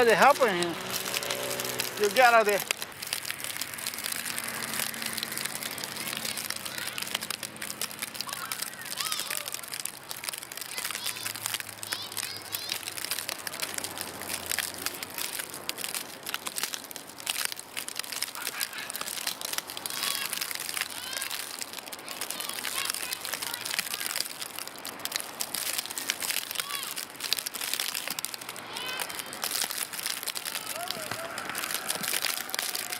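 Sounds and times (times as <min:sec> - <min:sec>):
crackling and crunching: 0:00.0 - 0:32.9
faint voices: 0:03.6 - 0:14.0, 0:18.2 - 0:24.4, 0:26.1 - 0:32.9.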